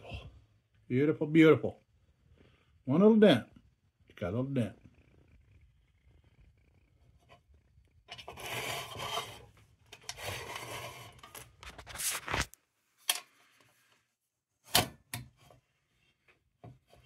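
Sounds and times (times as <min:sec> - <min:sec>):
rubbing and scraping metal: 0:07.1 - 0:12.5.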